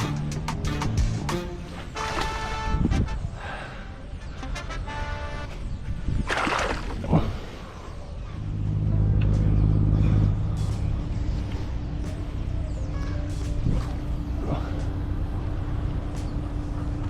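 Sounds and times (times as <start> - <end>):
low engine rumble: 6.8 - 17.0.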